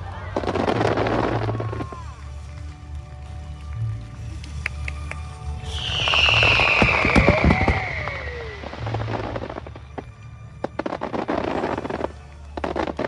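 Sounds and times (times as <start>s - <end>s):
crackles of exploding fireworks: 0.0s - 13.0s
firework whistle falling in pitch: 5.6s - 8.9s.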